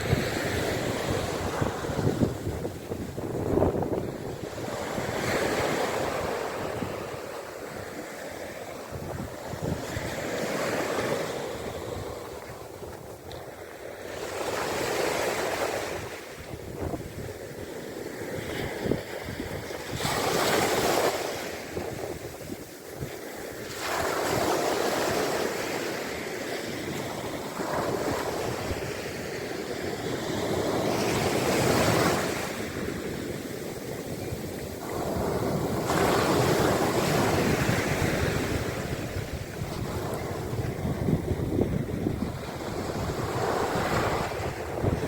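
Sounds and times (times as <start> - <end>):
sea waves breaking on shore: 0.0 - 45.0.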